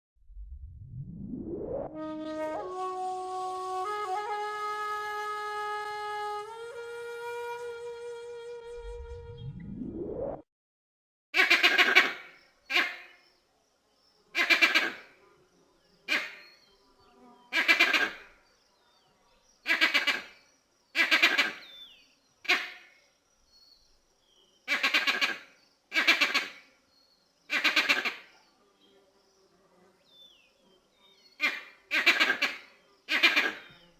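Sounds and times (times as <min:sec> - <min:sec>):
monkey stuttering calls: 0:19.7 - 0:20.4, 0:21.0 - 0:21.7, 0:24.7 - 0:26.6, 0:27.5 - 0:28.3, 0:31.4 - 0:33.7.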